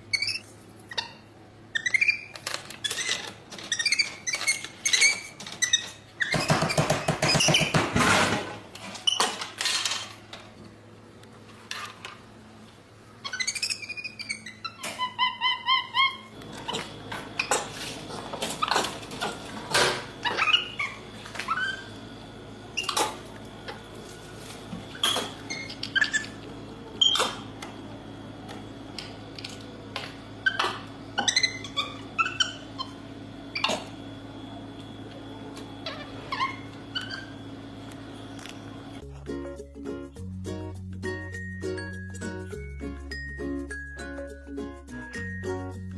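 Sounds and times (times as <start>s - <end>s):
animal squeaks and chirps: 13.2s - 16.8s, 20.2s - 21.9s, 25.0s - 26.4s, 30.4s - 33.9s.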